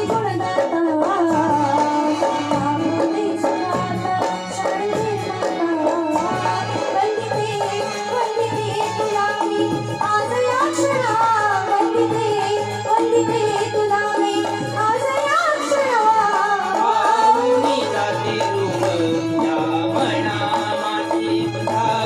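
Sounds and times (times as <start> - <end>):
hand drum rhythm: 14.2 - 22.0.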